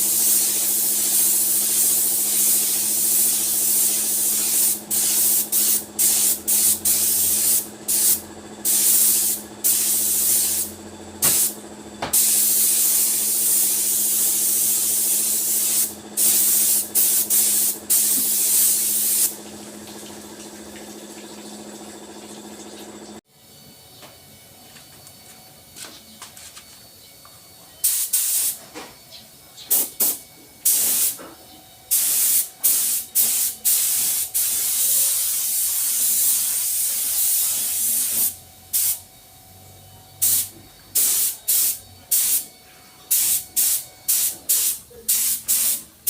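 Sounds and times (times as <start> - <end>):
air spray gun hissing: 0.0 - 19.4, 27.8 - 28.6, 29.7 - 31.2, 31.9 - 39.1, 40.2 - 42.5, 43.1 - 45.9
steady machine hum: 0.0 - 27.8, 37.6 - 45.0.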